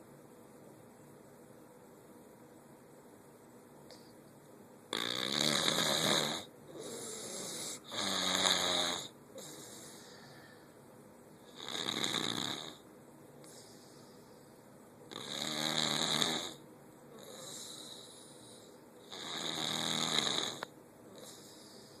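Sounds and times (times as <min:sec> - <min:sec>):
quiet breathing: 0:03.8 - 0:04.3, 0:05.5 - 0:08.0, 0:09.0 - 0:22.0
loud snoring: 0:04.9 - 0:10.0, 0:11.5 - 0:12.8, 0:15.1 - 0:18.2, 0:19.0 - 0:21.6.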